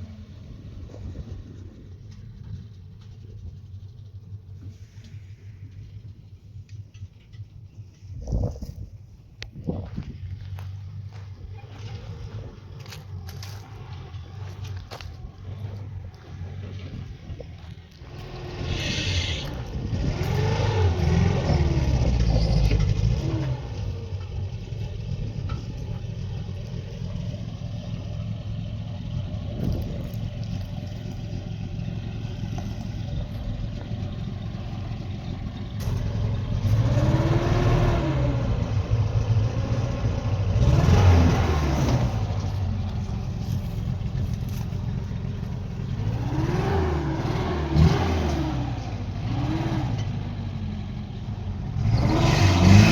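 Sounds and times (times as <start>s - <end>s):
vehicle engine revving: 11.1s - 52.9s.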